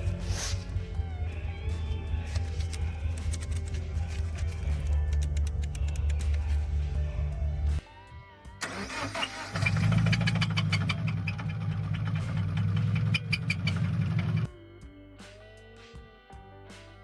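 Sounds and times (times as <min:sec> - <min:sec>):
car engine starting and running: 0:08.6 - 0:14.5.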